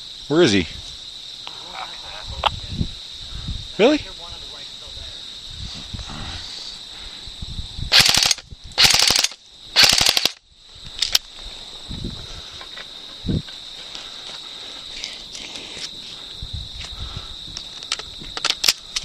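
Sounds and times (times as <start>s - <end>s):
airsoft gun rapid shots: 7.9s - 10.4s.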